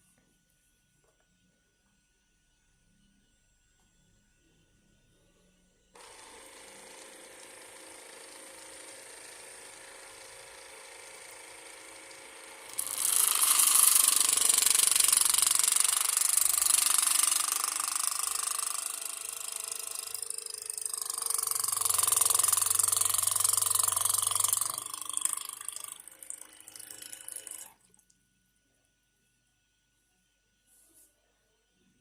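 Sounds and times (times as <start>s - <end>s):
water running into sink: 25.3s - 28.0s.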